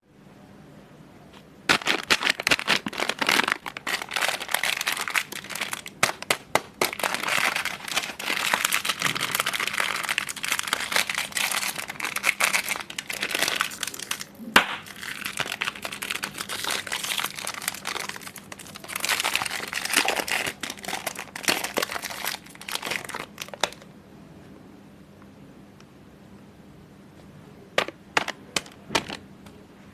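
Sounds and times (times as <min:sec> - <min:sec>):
candy wrappers crinkling: 0:01.7 - 0:23.9.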